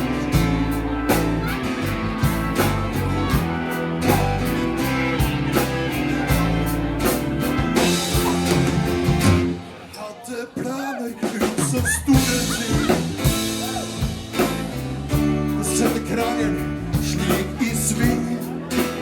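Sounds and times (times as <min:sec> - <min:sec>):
drum hits: 0:00.0 - 0:09.6, 0:11.3 - 0:15.4
rock band playing live: 0:00.0 - 0:19.0.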